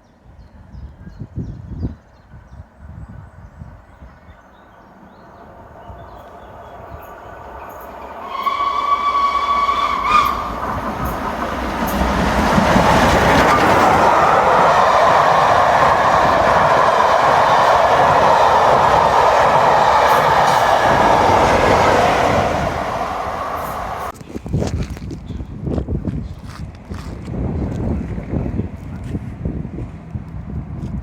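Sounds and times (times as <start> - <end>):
train passing at speed: 3.7 - 24.2
train horn: 7.6 - 11.2.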